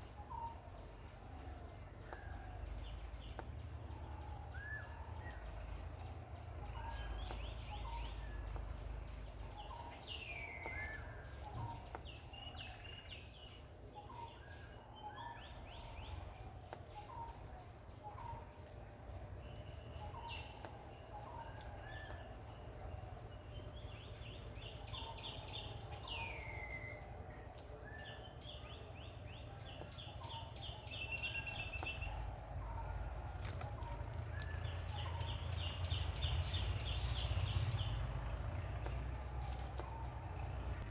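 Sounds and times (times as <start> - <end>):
birds chirping: 23.5 - 40.9.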